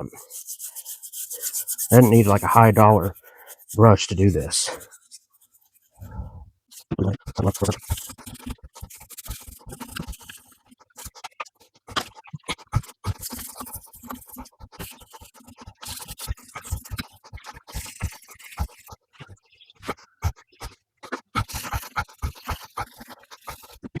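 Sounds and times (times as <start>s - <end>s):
hand brush scrubbing engine parts: 0.0s - 6.0s.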